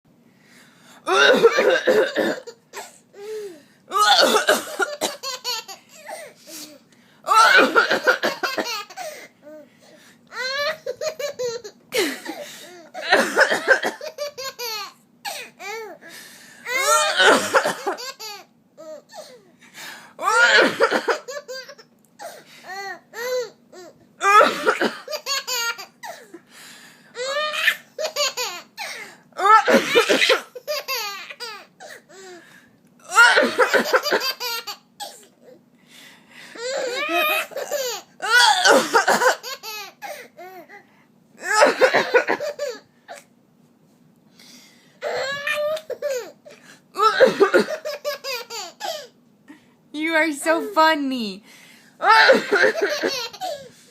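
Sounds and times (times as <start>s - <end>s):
adult coughing: 1.1s - 3.0s, 4.0s - 5.3s, 7.4s - 8.8s, 11.9s - 14.1s, 16.8s - 18.0s, 20.3s - 21.3s, 24.2s - 25.2s, 29.5s - 30.6s, 38.4s - 39.5s, 41.4s - 42.6s, 47.0s - 47.9s, 52.1s - 53.6s
baby laughing: 5.1s - 6.2s, 10.3s - 12.4s, 14.0s - 15.9s, 16.7s - 19.0s, 20.6s - 21.9s, 25.1s - 26.2s, 27.2s - 31.7s, 33.5s - 35.3s, 36.6s - 40.6s, 47.6s - 49.1s, 52.1s - 53.6s.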